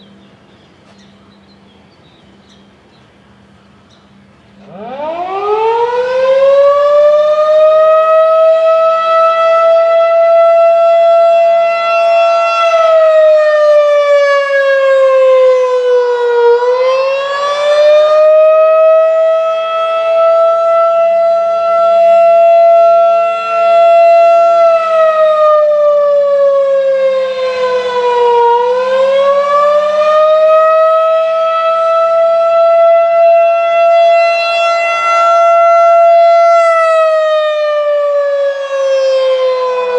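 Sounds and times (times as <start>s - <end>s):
outdoor warning siren: 2.7s - 39.9s.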